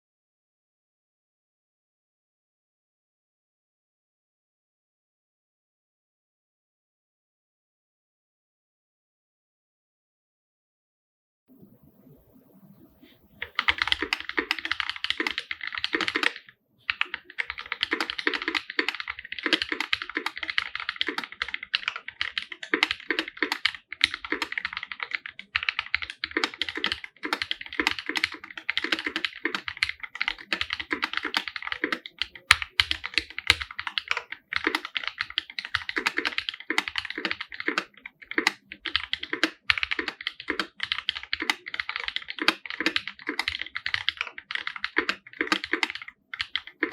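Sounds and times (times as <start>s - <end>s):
mechanical keyboard typing: 13.4s - 46.9s.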